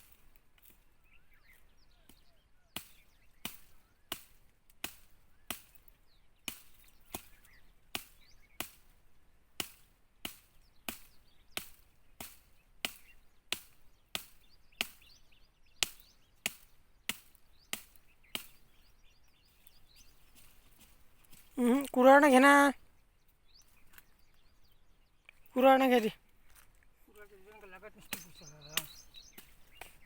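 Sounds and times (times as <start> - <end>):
cutting tool chopping plant: 2.8 - 9.0, 9.6 - 15.2, 15.8 - 18.8, 27.5 - 30.0.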